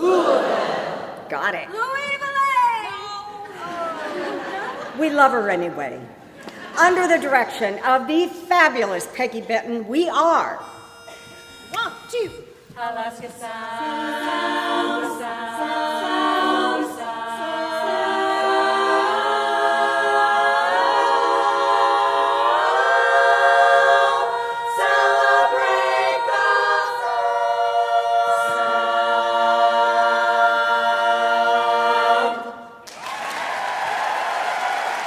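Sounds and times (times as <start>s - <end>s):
women's a cappella chorus singing: 0.0s - 1.3s, 2.6s - 5.2s, 10.4s - 32.9s
audience applause: 32.8s - 35.0s.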